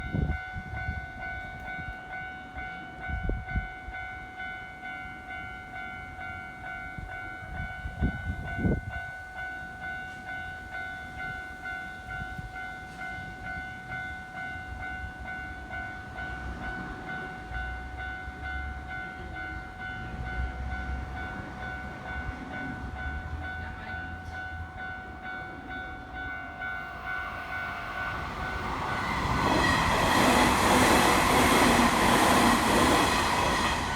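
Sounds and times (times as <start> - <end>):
level crossing warning bell: 0.0 - 33.9
approaching train rumble: 13.2 - 33.9.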